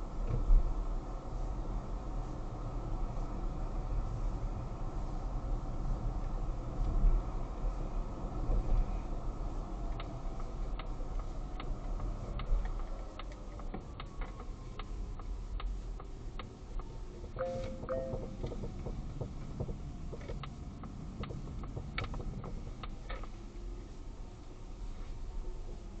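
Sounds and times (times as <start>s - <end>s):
low road and cabin rumble: 0.0s - 26.0s
sharp suspension clicks: 9.9s - 23.4s
short beeps: 17.4s - 18.4s.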